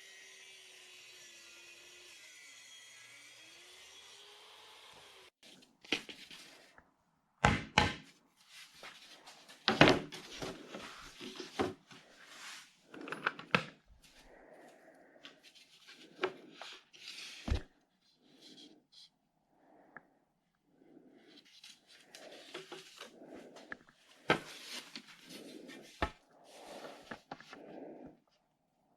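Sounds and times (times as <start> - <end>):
rubbing and scraping: 8.4 - 19.1, 21.0 - 28.1.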